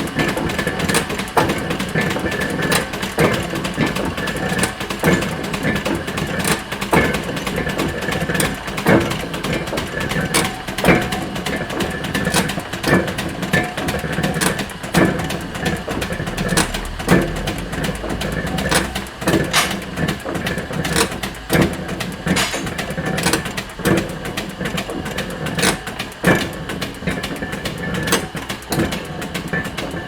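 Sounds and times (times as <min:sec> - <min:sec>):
clanks and knocks: 0:00.0 - 0:30.0
machinery humming: 0:00.0 - 0:30.0.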